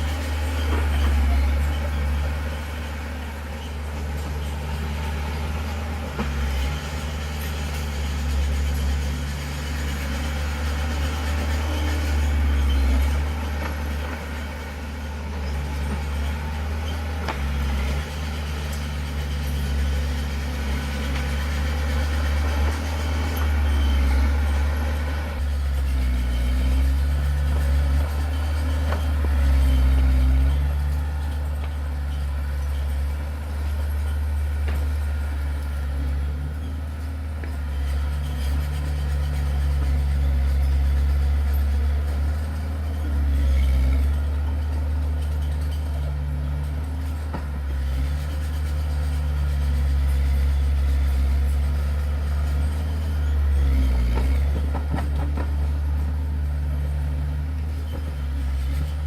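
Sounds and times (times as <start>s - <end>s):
diesel engine droning: 0.0s - 59.0s.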